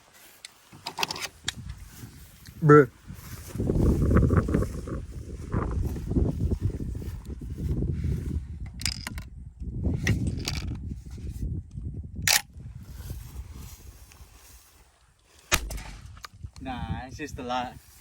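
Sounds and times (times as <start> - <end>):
shotgun action clicks: 12.2 - 12.5.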